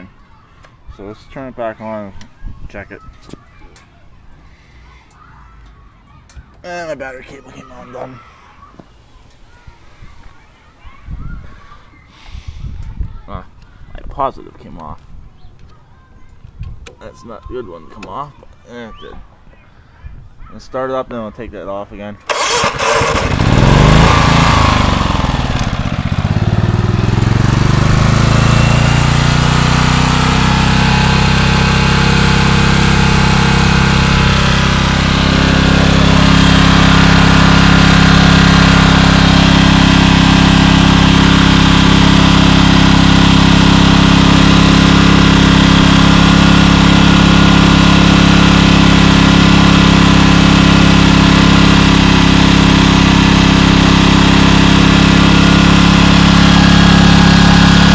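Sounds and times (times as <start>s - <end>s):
generator engine running: 22.3s - 57.9s.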